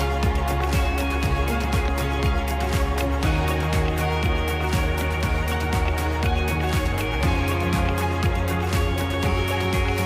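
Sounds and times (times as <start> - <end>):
background music with steady beat: 0.0 - 10.0.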